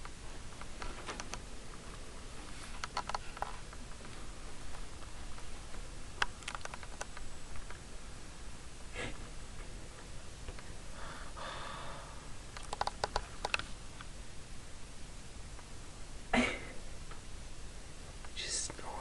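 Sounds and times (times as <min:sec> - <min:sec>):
small clicks: 0:02.8 - 0:03.6, 0:06.2 - 0:07.8, 0:12.5 - 0:14.1.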